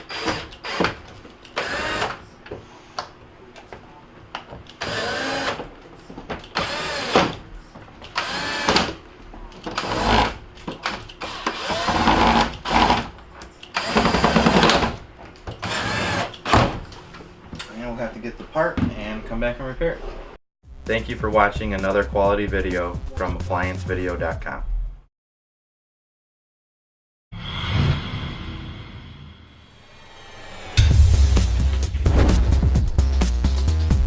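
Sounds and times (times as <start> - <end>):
cordless drill driving screws: 0.0 - 2.2, 4.8 - 5.6, 6.5 - 7.3, 8.1 - 9.0, 9.8 - 10.4, 11.2 - 13.1, 13.8 - 14.7, 15.6 - 16.5.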